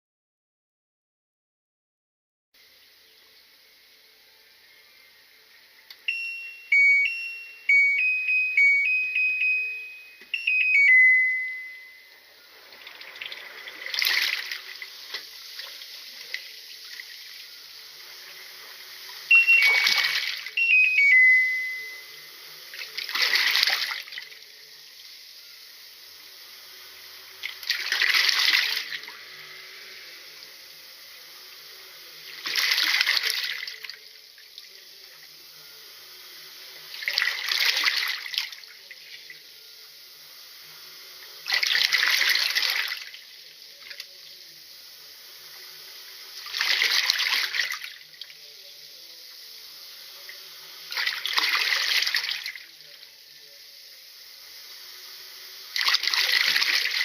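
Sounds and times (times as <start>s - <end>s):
steady hiss: 2.6s - 10.6s, 11.2s - 57.0s
washing machine beeping: 5.9s - 24.4s.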